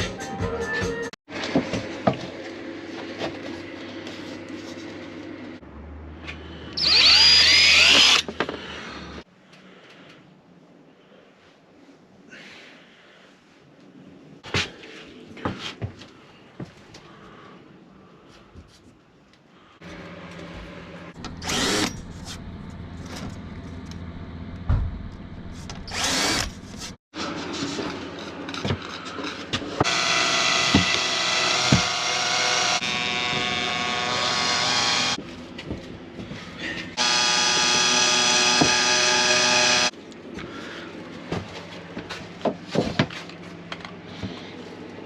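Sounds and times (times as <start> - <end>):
power tool cutting plywood: 6.8 - 9.2, 21.2 - 22.4, 25.9 - 26.6, 29.8 - 35.2, 37.0 - 39.9.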